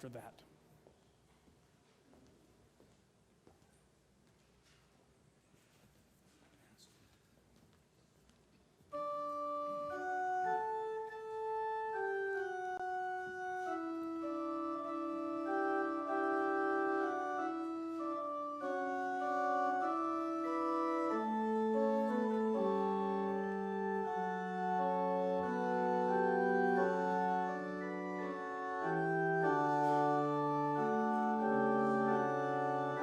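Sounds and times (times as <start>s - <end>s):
organ playing sustained chords: 8.9s - 33.0s.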